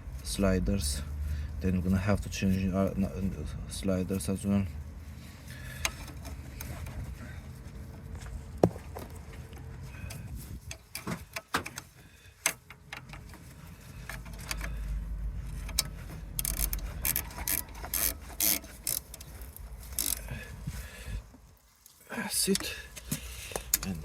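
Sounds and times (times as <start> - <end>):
ratchet clicking: 15.6 - 20.3.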